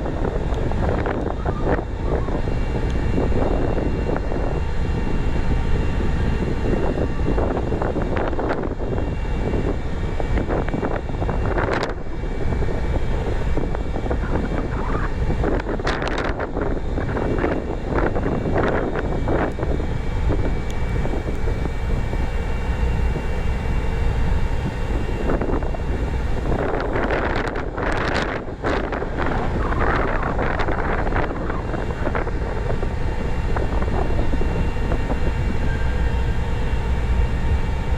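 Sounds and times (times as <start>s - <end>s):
crane machinery rumble: 0.0s - 37.9s
wind on microphone: 0.0s - 37.9s.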